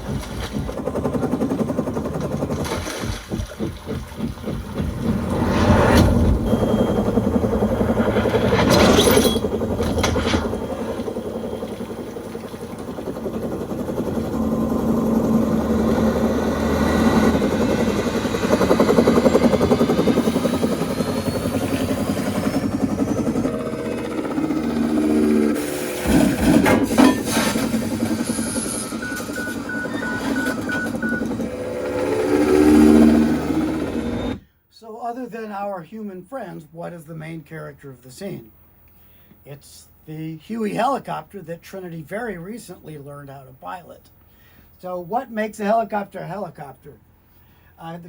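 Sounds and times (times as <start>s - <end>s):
helicopter rotor thwopping: 0.0s - 34.4s
faint rising whine: 5.0s - 21.7s.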